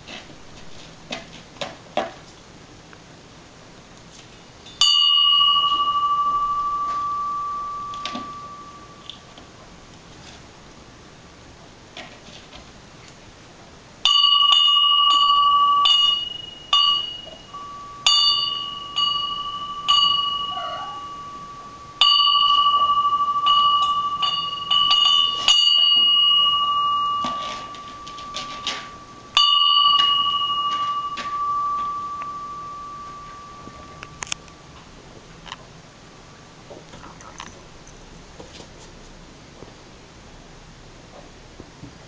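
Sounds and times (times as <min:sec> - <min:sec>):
small bell ringing: 0:04.6 - 0:09.4, 0:14.0 - 0:34.8.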